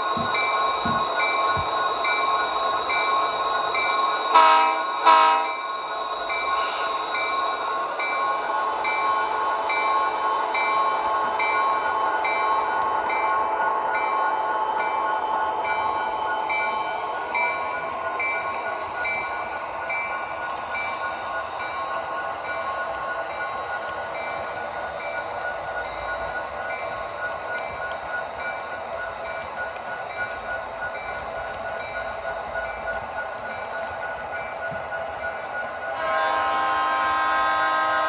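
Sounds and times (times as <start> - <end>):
model locomotive diesel engine sound: 0.0 - 38.0
horn blasts: 4.4 - 5.6, 36.0 - 38.0.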